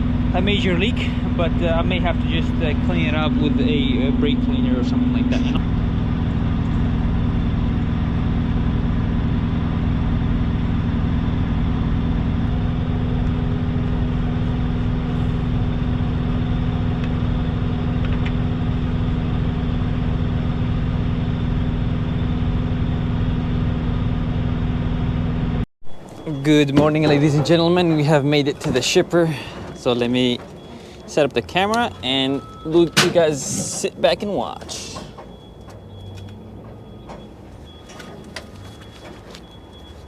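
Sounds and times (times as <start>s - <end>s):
diesel truck engine running: 0.0s - 40.0s.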